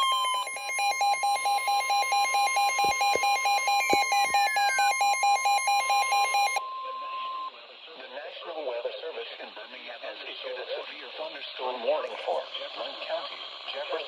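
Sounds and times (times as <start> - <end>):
rapid electronic beeping: 0.0 - 6.6
steady high alarm tone: 0.0 - 7.5.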